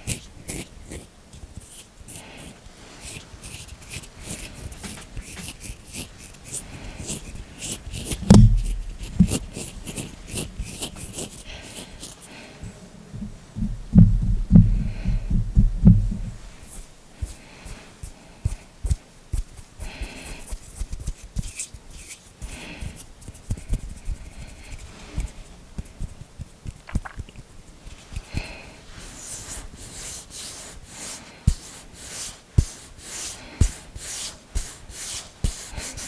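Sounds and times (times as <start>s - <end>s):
deep low thumps: 8.2s - 10.8s, 12.6s - 16.5s.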